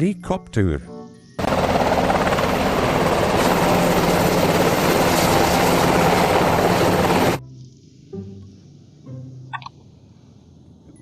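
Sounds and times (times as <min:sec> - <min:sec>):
helicopter rotor blades chopping: 0:01.4 - 0:07.4.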